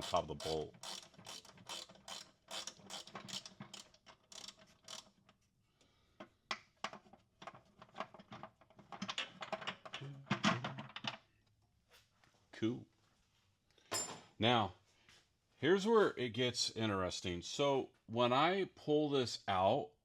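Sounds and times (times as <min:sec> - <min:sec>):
ratcheting wrench clicking: 0:00.0 - 0:05.2.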